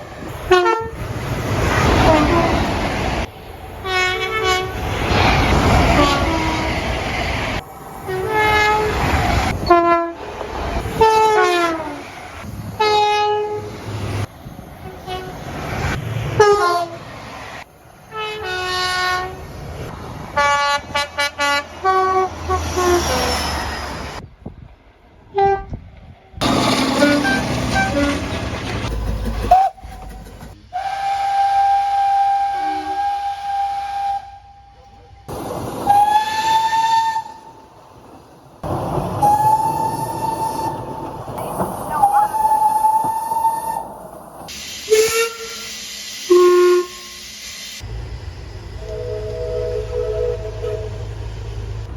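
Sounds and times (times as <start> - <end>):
train horn blasts: 0.4 - 1.0, 1.9 - 2.7, 3.8 - 4.8, 5.8 - 6.9, 8.0 - 9.0, 9.6 - 10.2, 11.0 - 12.0, 12.8 - 13.8, 14.8 - 15.4, 16.4 - 17.0, 18.1 - 19.4, 20.4 - 23.4, 25.3 - 25.8, 26.7 - 28.3, 30.7 - 35.1, 35.9 - 37.5, 46.3 - 47.2, 48.8 - 51.3.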